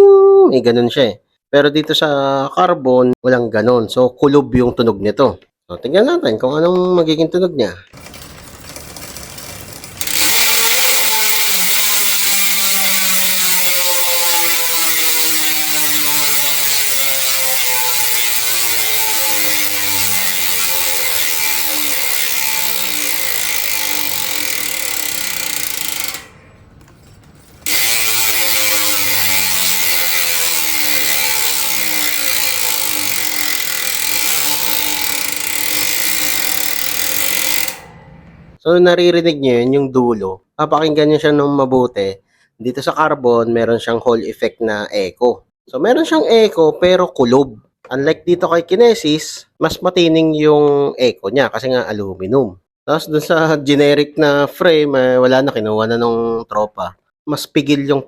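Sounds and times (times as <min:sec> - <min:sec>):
bicycle hub ratcheting buzz: 0:08.0 - 0:38.0.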